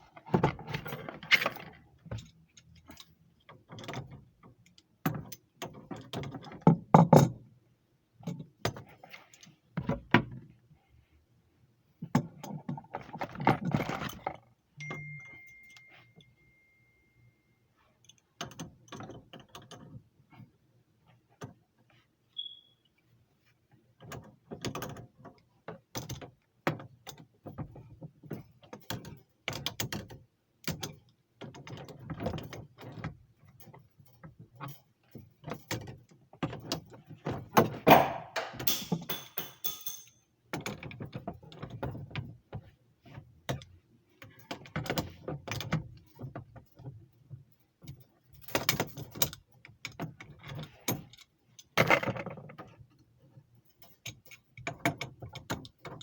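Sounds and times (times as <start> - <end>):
hand tools clicking on metal: 37.9 - 40.2.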